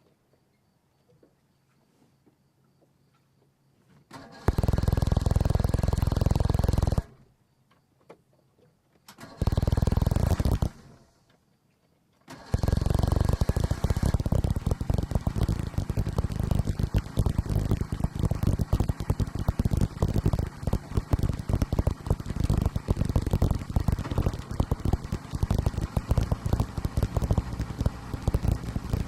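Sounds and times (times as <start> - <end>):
boat engine starting and running: 4.2 - 7.2, 9.2 - 11.0, 12.3 - 29.0.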